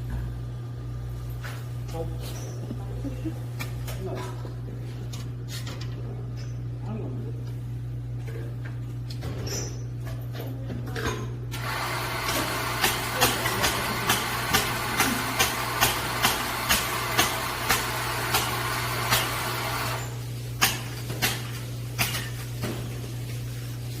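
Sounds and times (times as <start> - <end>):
coffee grinder running: 11.5 - 20.2.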